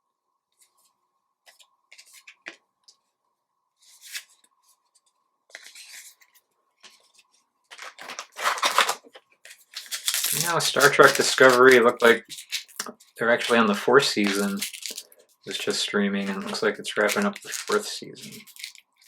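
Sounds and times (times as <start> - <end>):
cards rustling: 3.8 - 4.4, 5.5 - 19.0
card packs crinkling: 7.7 - 19.0.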